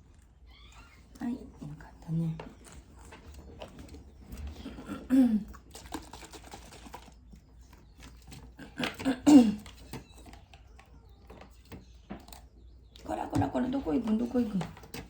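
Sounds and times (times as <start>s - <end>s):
handling clicks and rustling: 5.7s - 15.0s.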